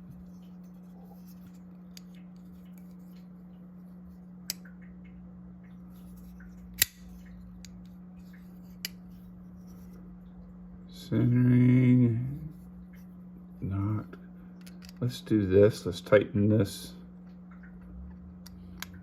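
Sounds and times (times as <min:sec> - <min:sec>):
steady low hum: 0:00.0 - 0:19.0
metallic knife clicks: 0:06.7 - 0:07.8.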